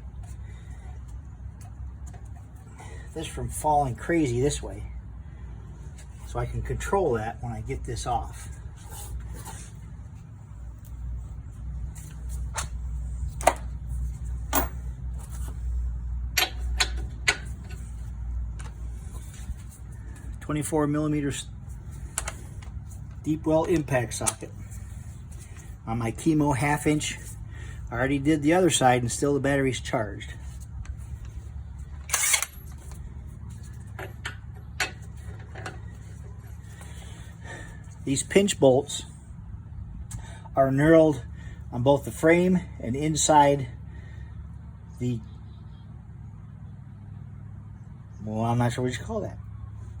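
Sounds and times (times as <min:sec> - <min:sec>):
low hum: 0:00.0 - 0:42.8
metal tools clicking: 0:32.0 - 0:33.0
impact wrench burst: 0:32.1 - 0:32.6.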